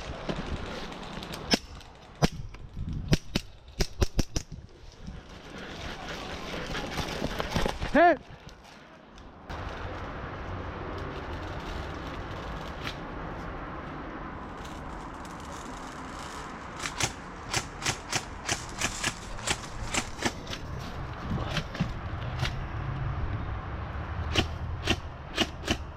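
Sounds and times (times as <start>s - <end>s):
rustling: 14.3s - 22.5s
sharp airsoft shots: 24.3s - 25.9s.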